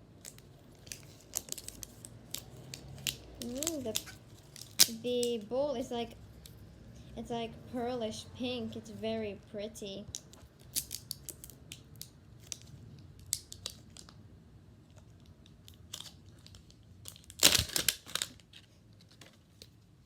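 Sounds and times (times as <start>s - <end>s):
plastic packaging crinkling: 0.2s - 5.5s, 15.6s - 19.8s.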